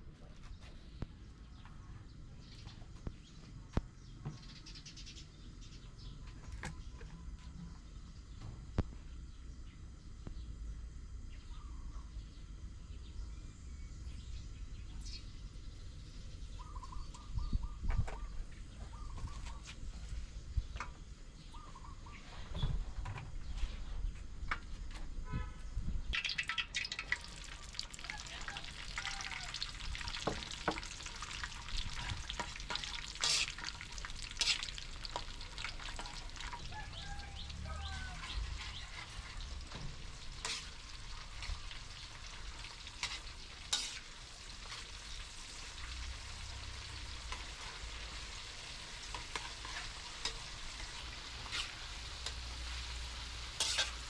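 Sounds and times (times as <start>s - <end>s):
food sizzling in hot oil: 26.1s - 54.0s
utensil clinking and scraping: 32.0s - 36.6s.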